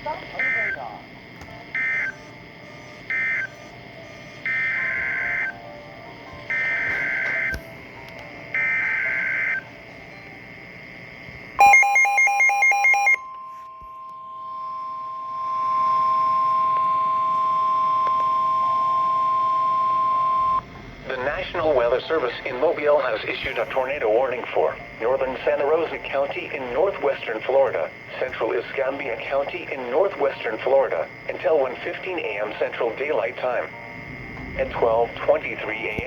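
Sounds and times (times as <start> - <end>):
steady warning alarm tone: 0.0 - 36.0
rapid beeping: 1.7 - 5.6, 6.5 - 7.6, 11.6 - 33.8
warbling digital data tones: 1.7 - 5.6, 11.6 - 28.0.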